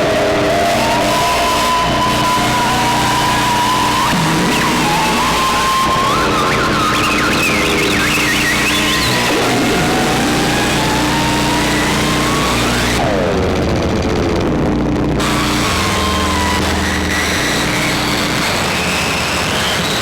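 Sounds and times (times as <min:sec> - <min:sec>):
falling synth sweep: 0:00.0 - 0:20.0
low droning synth tones: 0:00.0 - 0:20.0
squealing gliding pitches: 0:15.2 - 0:20.0.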